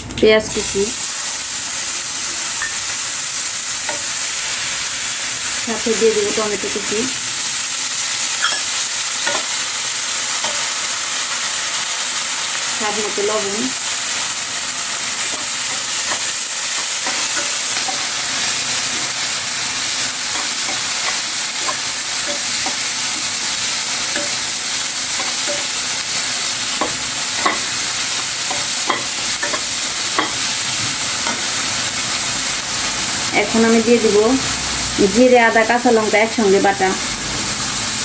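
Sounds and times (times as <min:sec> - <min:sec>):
food sizzling in hot oil: 0:00.4 - 0:38.0
spatula scraping and clicking: 0:15.2 - 0:27.8.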